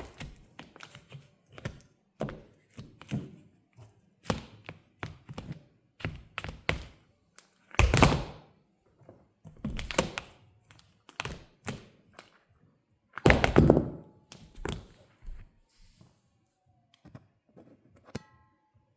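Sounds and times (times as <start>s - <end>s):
high heels tapping on hard floor: 13.2s - 14.0s.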